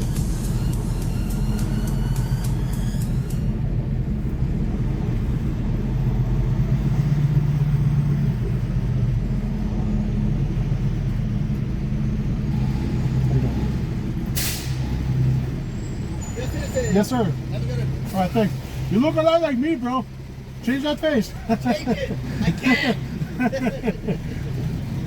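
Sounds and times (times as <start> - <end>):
truck diesel engine rumble: 0.0 - 25.0
short sharp air hiss: 14.4 - 14.8.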